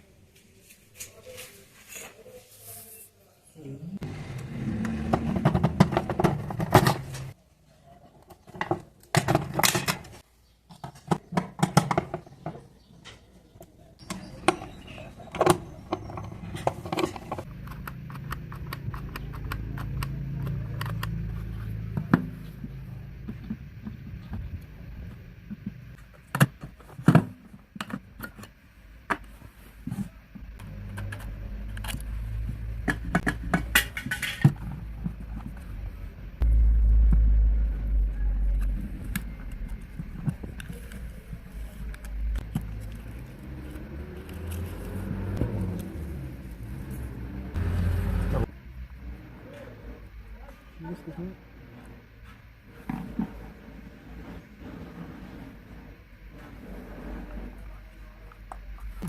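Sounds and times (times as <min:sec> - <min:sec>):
low steady rumble: 0:30.2 - 0:59.0.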